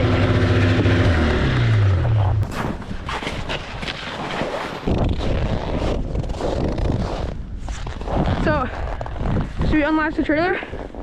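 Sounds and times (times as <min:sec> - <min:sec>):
snowmobile engine running: 0:00.0 - 0:02.5
crackles and thumps: 0:00.0 - 0:11.0.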